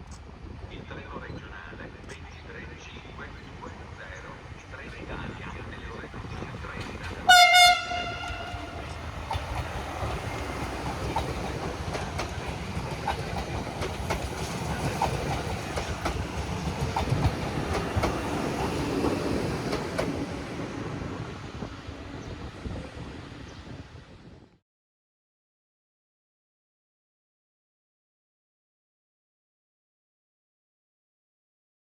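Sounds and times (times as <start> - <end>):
train passing at speed: 0.2 - 24.5
wheels clicking over rail joints: 6.0 - 20.4
train horn note: 7.3 - 8.9.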